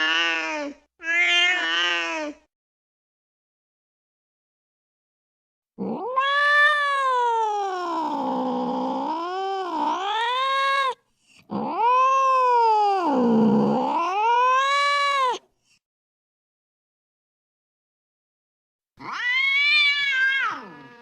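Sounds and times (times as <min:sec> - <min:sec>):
cat yowling: 0:00.0 - 0:02.4, 0:05.8 - 0:15.4, 0:19.0 - 0:21.0.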